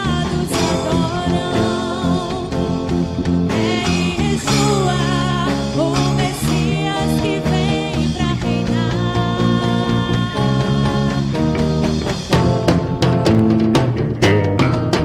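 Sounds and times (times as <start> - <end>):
person singing: 0.0 - 12.0
worship band with guitar: 0.0 - 15.0.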